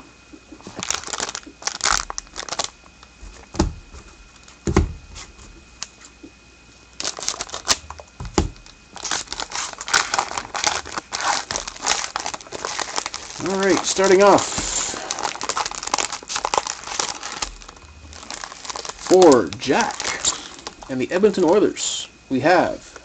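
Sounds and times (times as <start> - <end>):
plastic packaging crinkling and tearing: 0.6 - 3.2, 7.0 - 21.7
box thumps: 8.2 - 8.6.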